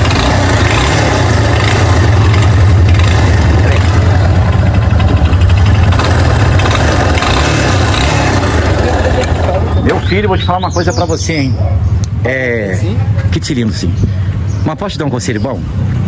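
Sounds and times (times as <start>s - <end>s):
mechanical noise in engine: 0.0s - 11.4s
motorcycle engine running: 0.0s - 13.4s.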